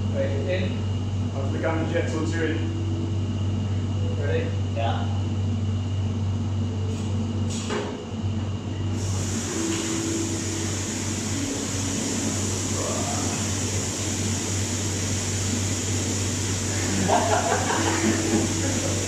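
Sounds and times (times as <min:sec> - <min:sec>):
water jet pump humming: 0:00.0 - 0:19.0
steady hiss: 0:09.0 - 0:19.0.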